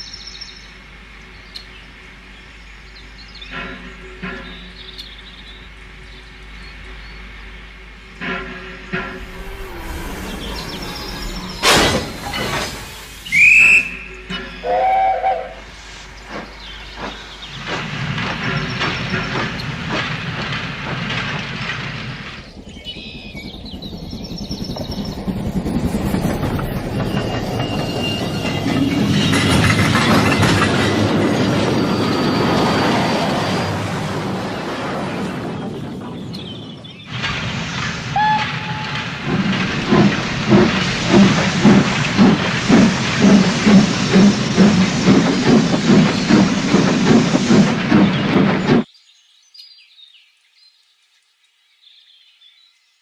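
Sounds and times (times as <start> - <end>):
train wheels clattering: 3.2 - 5.7, 8.0 - 48.9
steam hissing: 9.0 - 23.3, 37.2 - 48.8
high-pitched train whistle: 13.2 - 15.6, 38.2 - 39.0
low train whistle: 13.2 - 15.7, 38.2 - 39.0.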